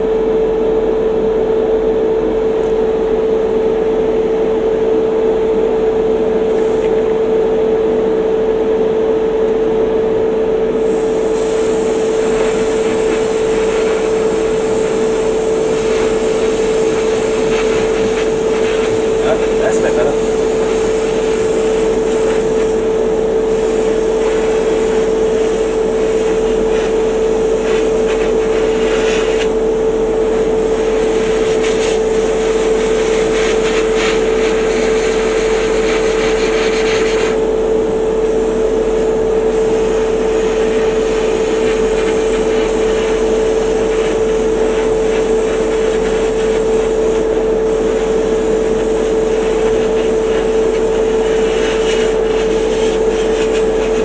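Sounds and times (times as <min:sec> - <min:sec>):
hiss: 0:10.8 - 0:54.0
electric motor humming: 0:11.0 - 0:37.6.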